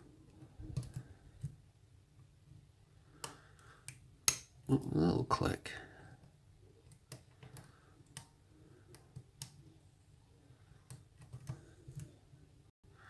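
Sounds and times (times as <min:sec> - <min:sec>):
lock pick clicking on pins: 0:03.2 - 0:04.6.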